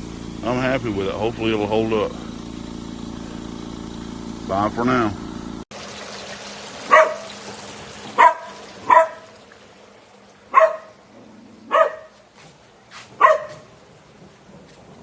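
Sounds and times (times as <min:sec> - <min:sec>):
dog barking: 0:06.9 - 0:07.3, 0:08.2 - 0:09.3, 0:10.5 - 0:11.0, 0:11.7 - 0:12.2, 0:13.2 - 0:13.7.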